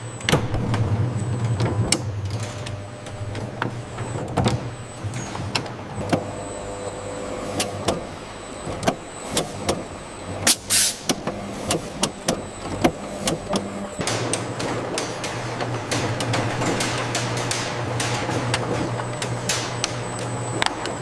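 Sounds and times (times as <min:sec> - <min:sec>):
machinery motor hum: 0:00.0 - 0:21.0
machine clicks and knocks: 0:07.6 - 0:21.0
hiss burst: 0:10.5 - 0:11.0.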